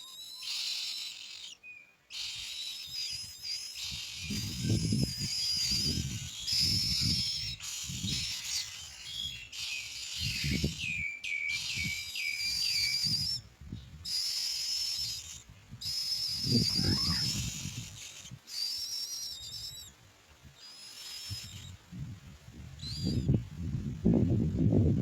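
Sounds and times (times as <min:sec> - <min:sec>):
nestlings begging calls: 0:00.0 - 0:19.9, 0:20.6 - 0:21.8, 0:22.8 - 0:23.3
falling chirps: 0:14.1 - 0:19.9.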